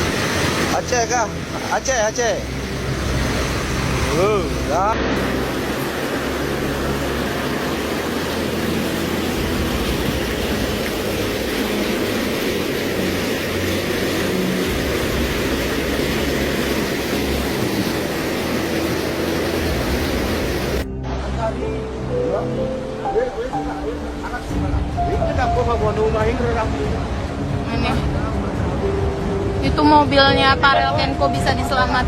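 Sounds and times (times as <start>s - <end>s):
vehicle engine running: 2.2s - 20.8s.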